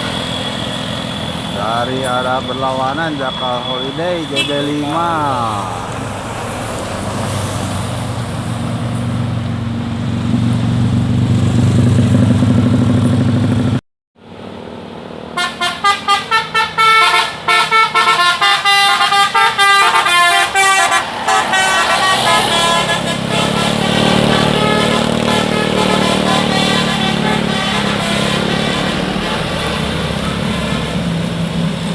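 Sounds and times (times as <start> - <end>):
bus engine running: 0.0 - 31.9
musical air horn melody: 15.4 - 30.8.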